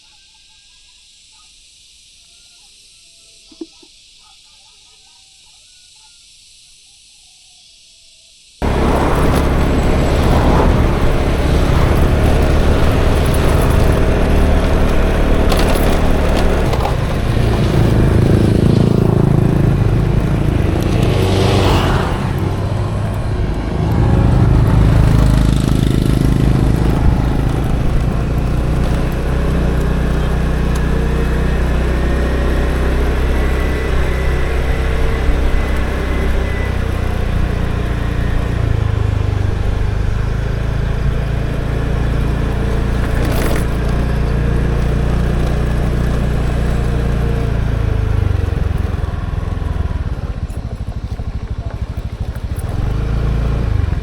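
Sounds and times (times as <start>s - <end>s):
small engine humming: 8.6s - 54.0s.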